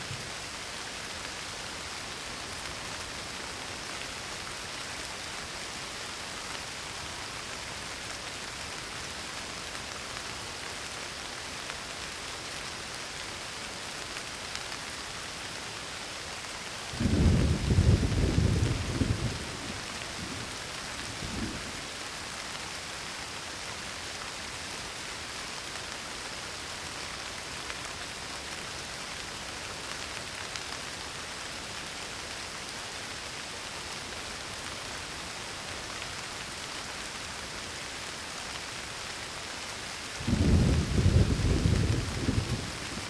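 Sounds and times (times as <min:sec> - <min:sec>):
steady rain hiss: 0:00.0 - 0:43.0
thunder rumbling: 0:17.0 - 0:21.8, 0:40.2 - 0:43.0.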